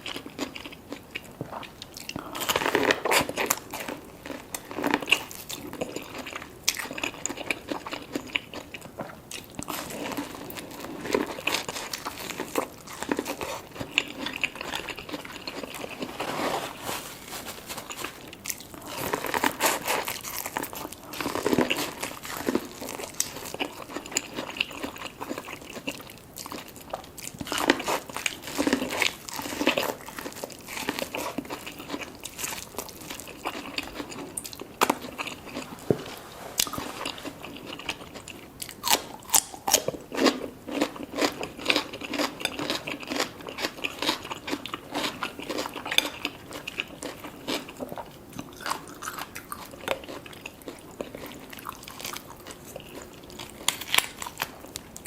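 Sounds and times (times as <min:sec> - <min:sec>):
crunchy bites and chewing: 0:36.6 - 0:55.0.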